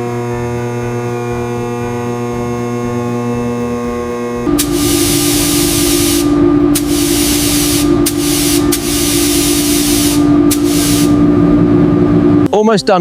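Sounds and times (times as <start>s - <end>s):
steady low hum: 4.4s - 12.5s
paint spray gun hissing: 4.5s - 11.3s.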